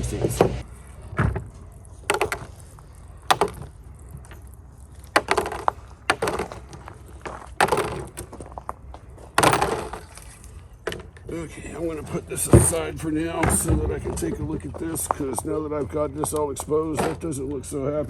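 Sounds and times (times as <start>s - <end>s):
tools knocking and clattering: 2.0s - 2.6s, 9.3s - 10.2s.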